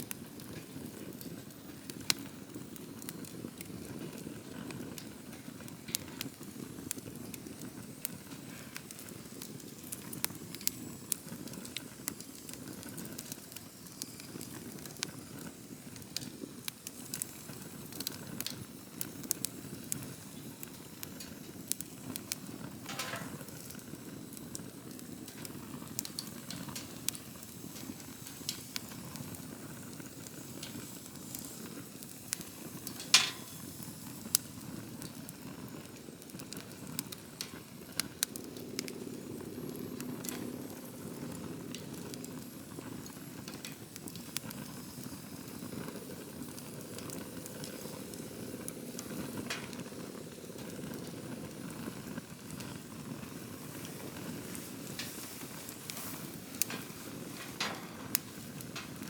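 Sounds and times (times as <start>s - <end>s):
campfire flames rushing: 0.0s - 59.0s
fire crackles and pops: 0.0s - 59.0s.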